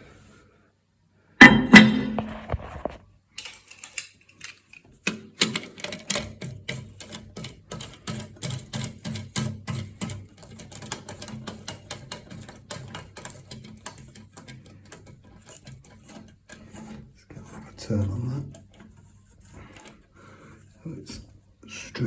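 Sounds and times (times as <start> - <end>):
plastic clicking and tapping: 2.4 - 17.0.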